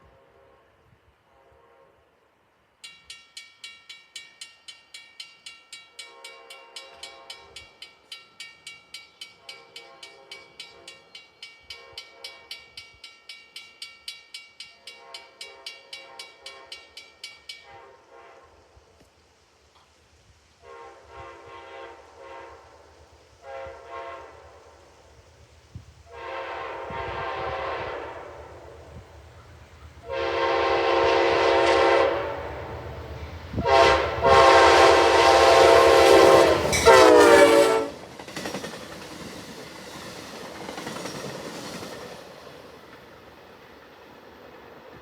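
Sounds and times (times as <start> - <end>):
train horn blasts: 0.0 - 2.4, 5.9 - 7.8, 9.3 - 12.8, 14.7 - 19.0, 20.6 - 25.0, 26.0 - 38.1
train wheels rumbling on rail: 2.8 - 45.0.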